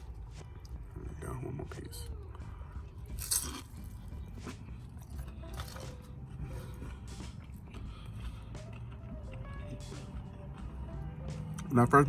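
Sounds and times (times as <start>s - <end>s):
person crunching fried chicken: 2.3s - 10.4s.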